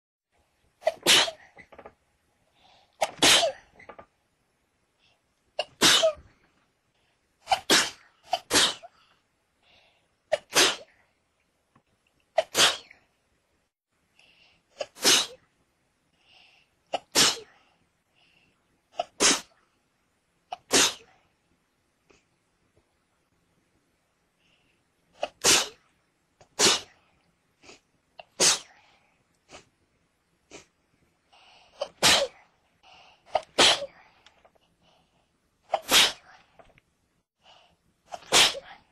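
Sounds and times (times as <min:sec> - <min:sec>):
person sneezing: 0:00.8 - 0:01.7, 0:03.0 - 0:03.8, 0:05.6 - 0:06.3, 0:07.4 - 0:08.9, 0:10.3 - 0:11.0, 0:12.4 - 0:13.0, 0:14.7 - 0:15.4, 0:17.0 - 0:17.6, 0:19.0 - 0:19.6, 0:20.5 - 0:21.2, 0:25.2 - 0:25.8, 0:26.4 - 0:27.0, 0:27.7 - 0:28.9, 0:31.8 - 0:32.5, 0:33.3 - 0:34.1, 0:35.7 - 0:36.4, 0:38.1 - 0:38.9.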